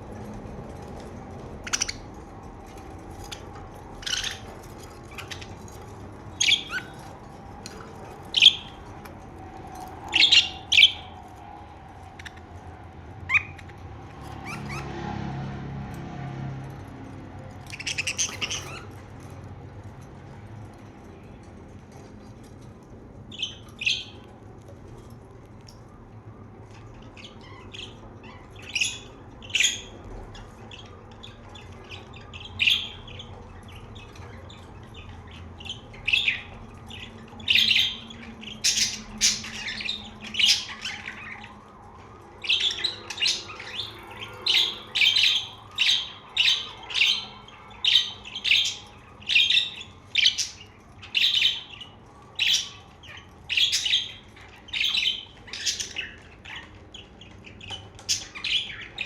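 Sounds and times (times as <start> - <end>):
budgerigars squawking: 1.6 - 2.1, 3.2 - 7.1, 7.7 - 8.8, 10.1 - 11.1, 17.7 - 19.0, 27.1 - 41.5, 42.4 - 59.0.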